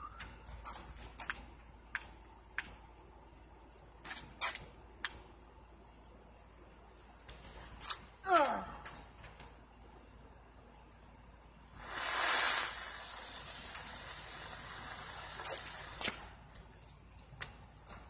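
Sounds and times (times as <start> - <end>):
firework hissing spray: 11.7 - 16.2.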